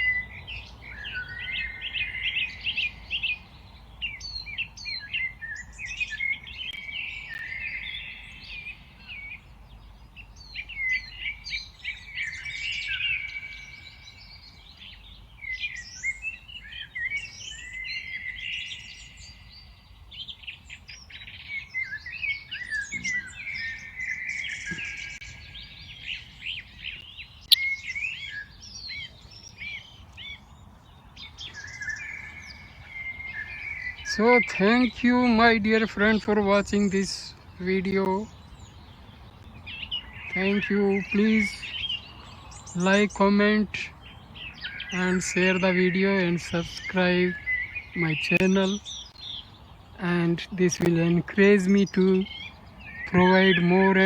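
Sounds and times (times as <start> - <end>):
songbirds chirping chorus: 0.0 - 54.0.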